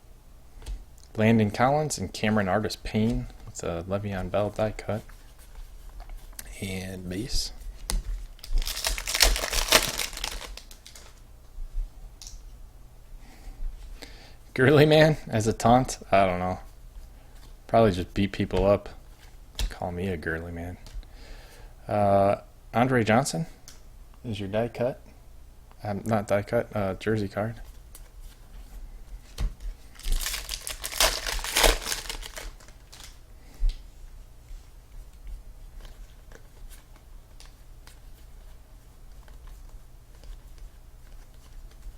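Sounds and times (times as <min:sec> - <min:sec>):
wrapper crinkling and tearing: 0:08.3 - 0:11.2, 0:29.9 - 0:33.2.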